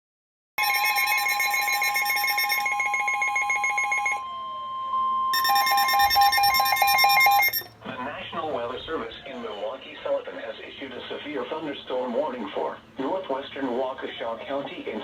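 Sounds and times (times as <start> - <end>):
steady alert tone: 0.6 - 4.3, 5.3 - 7.7
rapid shrill beeping: 0.6 - 4.4, 5.3 - 7.7.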